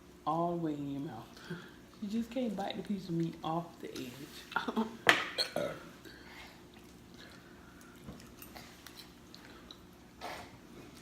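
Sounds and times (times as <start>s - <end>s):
chewing and mouth clicks: 6.7s - 10.2s.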